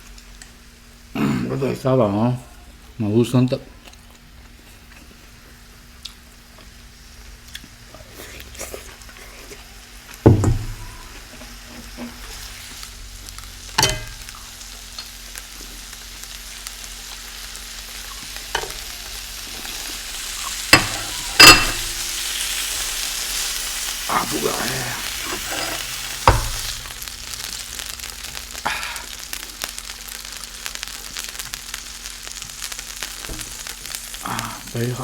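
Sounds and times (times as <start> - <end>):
wet chewing: 3.8 - 5.2.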